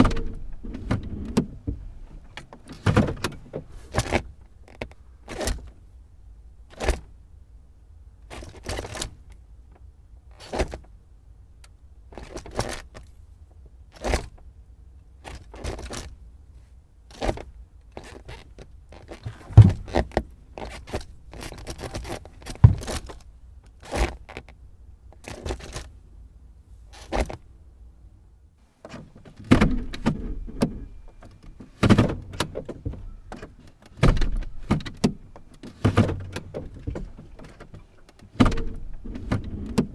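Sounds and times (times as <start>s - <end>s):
gear lever clunking: 0.0s - 5.8s, 17.1s - 24.6s, 28.8s - 39.9s.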